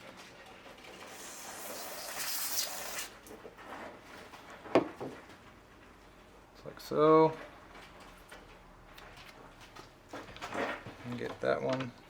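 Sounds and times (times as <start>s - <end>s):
aerosol can spraying: 1.1s - 3.2s.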